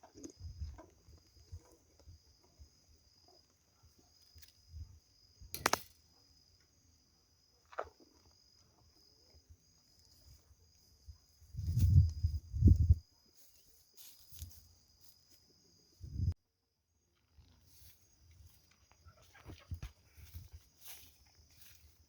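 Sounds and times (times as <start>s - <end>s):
insects chirring: 0.0s - 22.0s
sharp click: 5.5s - 6.0s.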